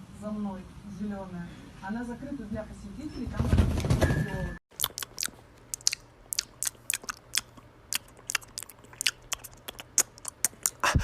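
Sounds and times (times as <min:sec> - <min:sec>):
chewing crunchy food: 0:04.7 - 0:11.0.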